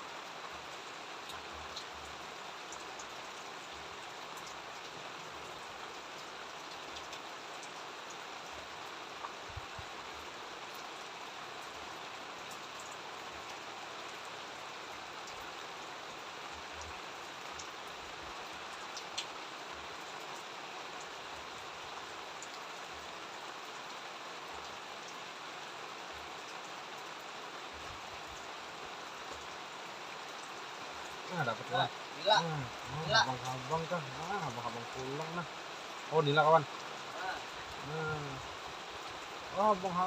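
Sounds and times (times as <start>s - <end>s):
steady rain hiss: 0.0s - 40.0s
raindrop ticks: 0.7s - 8.8s, 12.4s - 14.2s, 15.2s - 15.6s, 16.6s - 27.2s, 29.2s - 40.0s.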